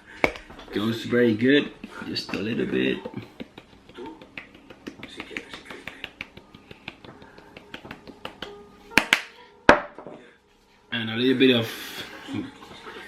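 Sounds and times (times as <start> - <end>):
spice container shaken and tapped: 3.2 - 8.4.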